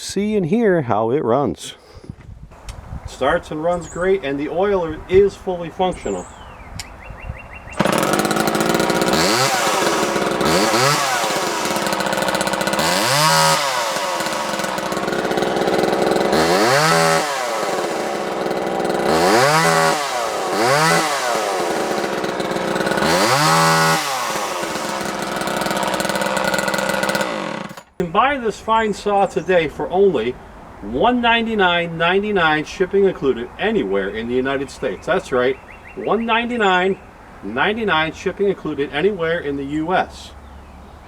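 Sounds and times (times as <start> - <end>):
chainsaw idling and revving: 7.8 - 28.1.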